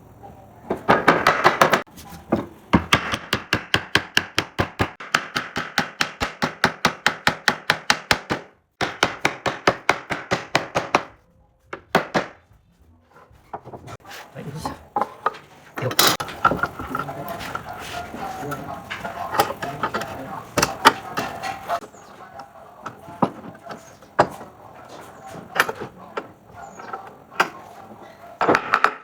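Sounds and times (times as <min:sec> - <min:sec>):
hand tool striking wood: 0:00.8 - 0:11.1, 0:18.5 - 0:29.0.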